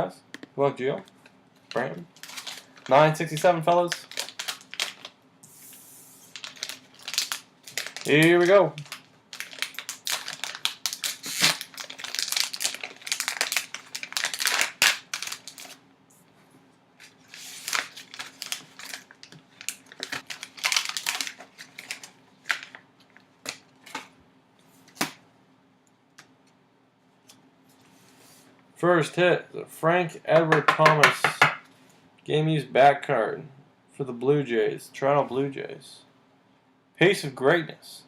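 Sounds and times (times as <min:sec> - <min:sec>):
packaging torn and crinkled: 0:02.2 - 0:05.2, 0:06.3 - 0:15.8, 0:17.1 - 0:22.8.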